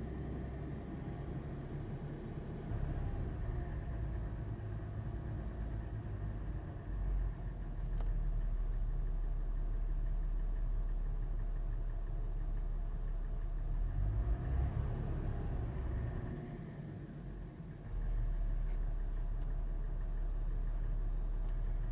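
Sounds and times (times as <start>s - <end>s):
engine idling: 0.0s - 21.9s.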